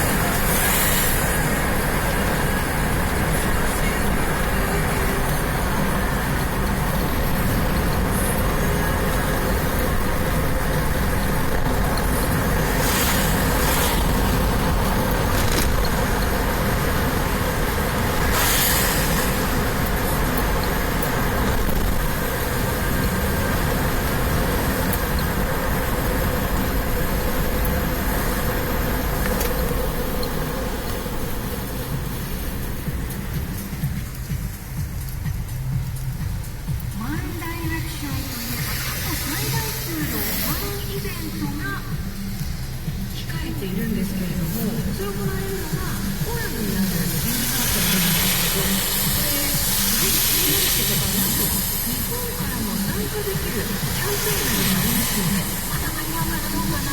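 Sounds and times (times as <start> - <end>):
road traffic rumble: 0.0 - 56.9
brief hissing: 18.3 - 19.6.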